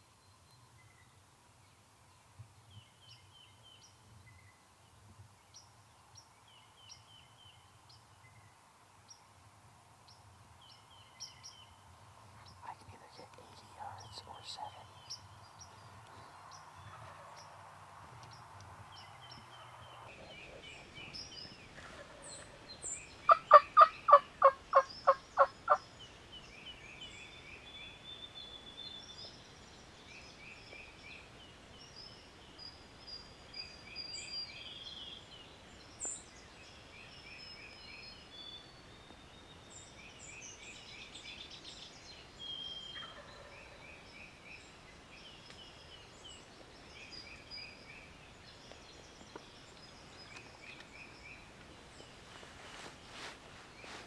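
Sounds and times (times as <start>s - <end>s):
songbirds chirping: 0.0s - 54.0s
turkey gobbling: 21.8s - 22.7s, 23.3s - 25.8s.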